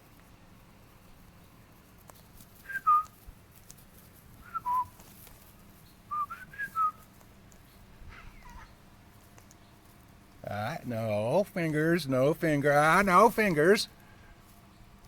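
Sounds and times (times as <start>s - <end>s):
person whistling: 2.7s - 3.1s, 4.5s - 4.9s, 6.1s - 7.0s.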